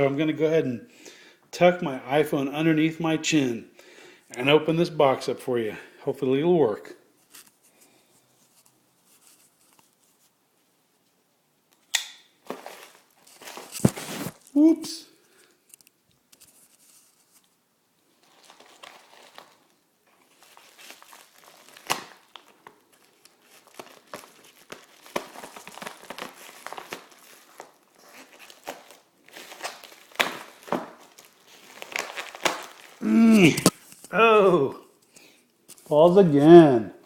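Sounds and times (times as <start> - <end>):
cardboard tearing: 12.4 - 14.6, 18.2 - 33.9
packaging crinkling and rustling: 12.4 - 14.6, 15.3 - 34.1
short vocal sound: 33.0 - 34.9.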